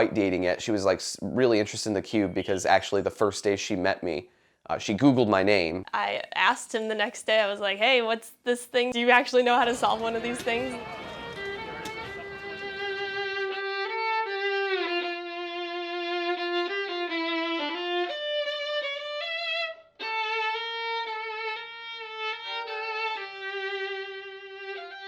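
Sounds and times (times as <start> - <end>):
solo violin melody: 9.6 - 25.0.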